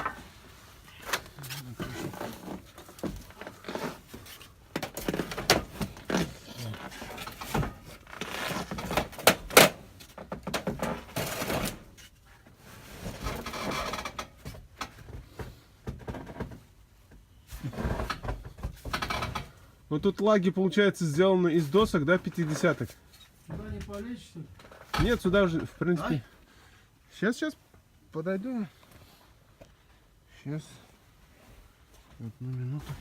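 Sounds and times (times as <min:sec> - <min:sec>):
knocks scrapes and creaks: 0:00.0 - 0:20.2, 0:21.5 - 0:26.6.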